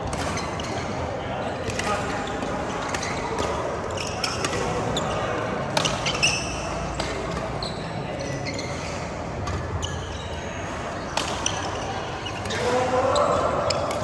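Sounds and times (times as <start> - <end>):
voices murmuring: 0.0 - 14.0
shoes squeaking on court floor: 0.1 - 1.0, 1.7 - 14.0
racket hitting shuttlecock: 1.7 - 7.6, 11.1 - 14.0.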